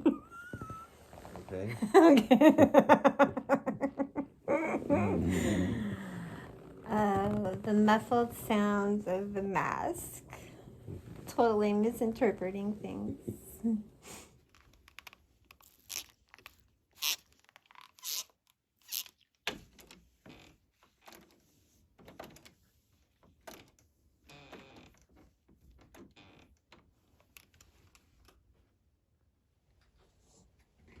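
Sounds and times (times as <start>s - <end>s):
hands rubbing on vinyl squeaking: 0.0s - 1.6s, 14.5s - 19.4s.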